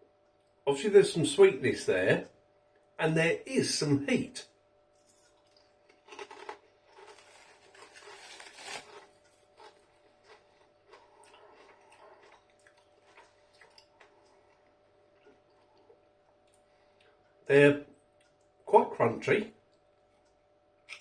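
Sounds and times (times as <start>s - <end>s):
man chewing crisps: 5.0s - 17.2s.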